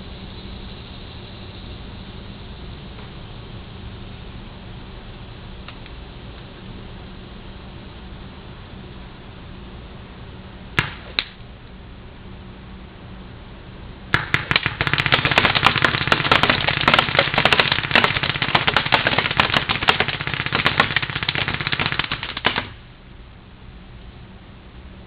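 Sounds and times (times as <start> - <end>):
paintball marker rapid firing: 10.8 - 11.4, 14.1 - 22.8.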